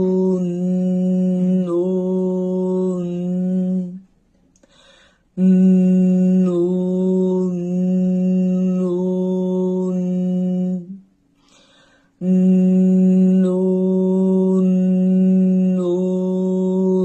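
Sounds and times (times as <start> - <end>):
person humming nasal tone: 5.4 - 11.0, 12.2 - 17.0.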